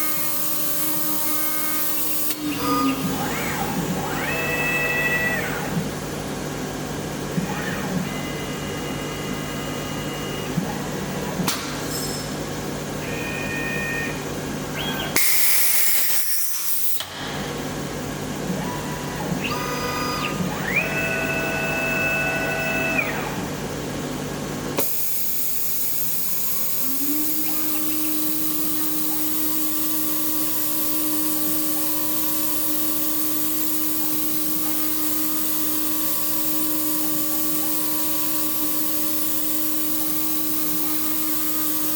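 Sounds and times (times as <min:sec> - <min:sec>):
spindle whine: 0:00.0 - 0:11.6
axis motors humming and whining: 0:00.0 - 0:11.7, 0:12.6 - 0:41.9.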